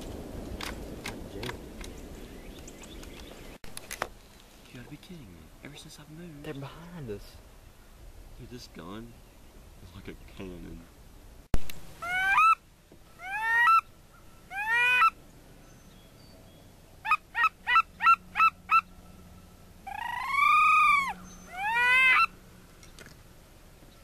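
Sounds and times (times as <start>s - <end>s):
goose clucking: 12.0s - 15.2s, 17.0s - 18.9s, 19.9s - 22.4s
goose honking: 12.0s - 15.2s, 17.0s - 19.0s, 19.8s - 22.4s.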